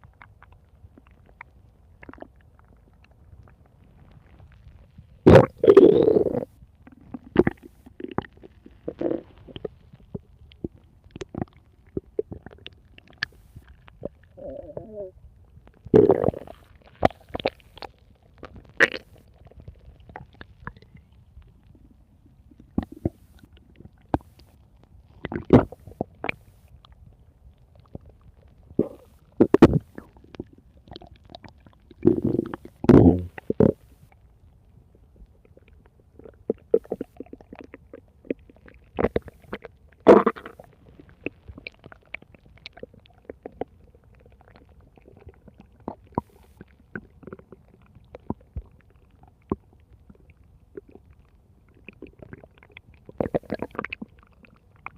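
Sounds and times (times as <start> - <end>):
stomach pops: 0.0 - 27.1, 27.7 - 34.2, 35.2 - 54.9
stomach growling: 0.0 - 54.9.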